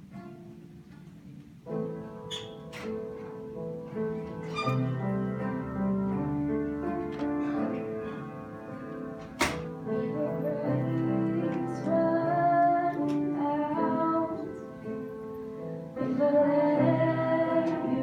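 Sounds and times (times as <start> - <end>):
woman singing: 9.9 - 14.8, 16.0 - 18.0.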